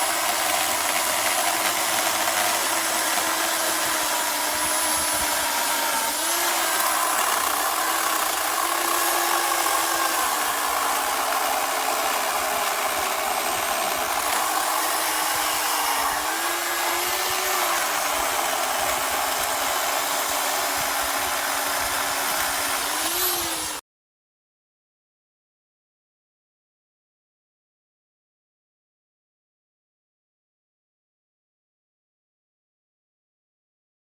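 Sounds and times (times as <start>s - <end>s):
electric chainsaw motor whine: 0.0s - 23.8s.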